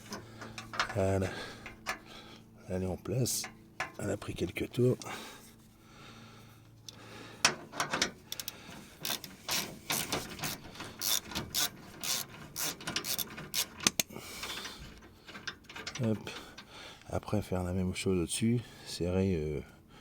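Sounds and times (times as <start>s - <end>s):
ratchet wrench clicking: 7.8s - 14.6s.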